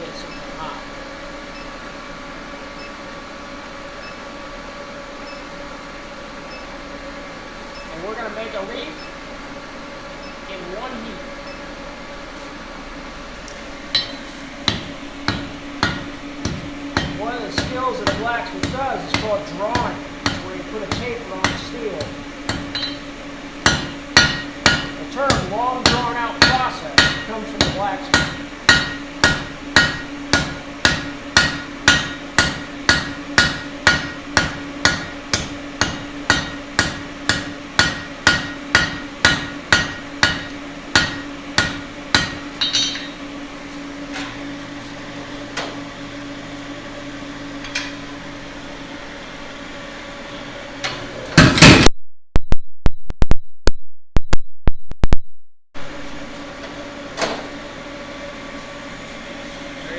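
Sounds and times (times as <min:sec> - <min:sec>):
hammer striking steel on anvil: 0:13.9 - 0:43.3, 0:51.4 - 0:51.9.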